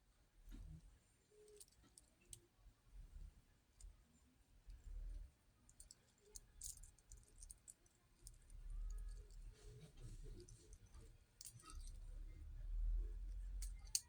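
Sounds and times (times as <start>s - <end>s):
wristwatch clicks: 13.6s - 14.0s.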